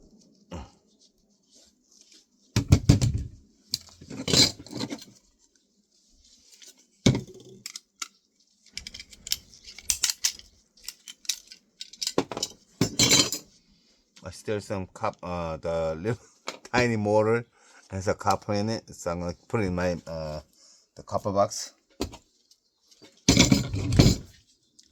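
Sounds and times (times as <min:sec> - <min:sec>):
small metal parts clinking: 0:03.7 - 0:05.2, 0:06.6 - 0:08.1, 0:08.8 - 0:13.4, 0:23.3 - 0:24.4.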